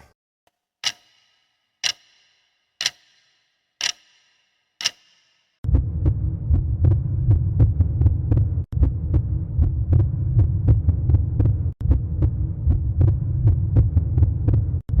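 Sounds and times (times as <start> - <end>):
sharp ticks: 0.8 - 5.5
low pulsing rumble: 5.6 - 15.0.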